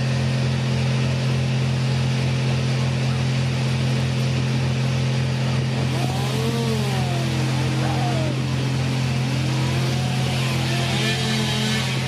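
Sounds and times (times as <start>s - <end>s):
small engine running: 0.0s - 12.0s
faint voices calling: 5.8s - 11.3s.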